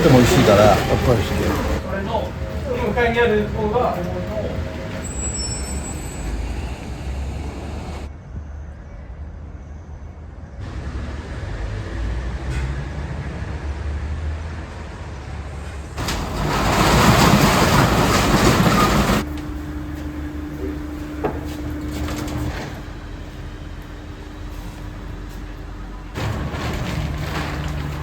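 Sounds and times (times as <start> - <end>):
loud rushing noise: 0.0 - 8.1
low engine rumble: 0.0 - 8.1, 14.9 - 28.0.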